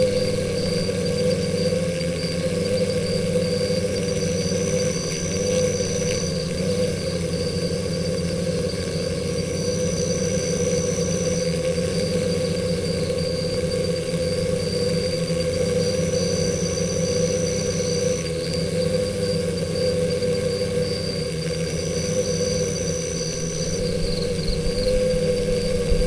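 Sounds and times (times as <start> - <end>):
bees buzzing: 0.0 - 6.8, 22.7 - 26.0
thin high whine: 0.0 - 26.0.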